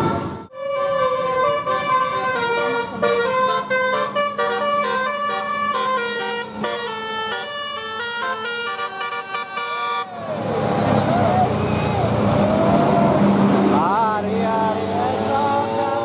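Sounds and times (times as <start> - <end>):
bus multi-tone horn melody: 0.0 - 10.2.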